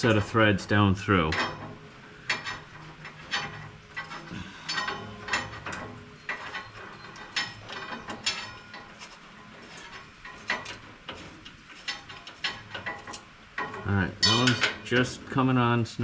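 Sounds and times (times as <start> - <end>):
metallic taps: 9.8 - 15.0.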